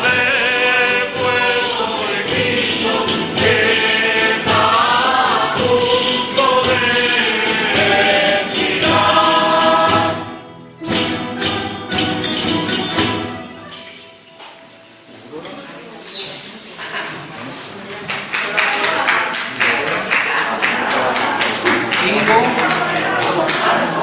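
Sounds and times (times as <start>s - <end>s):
group of voices singing: 0.0s - 12.2s, 20.0s - 24.0s
percussion strokes: 0.0s - 15.2s.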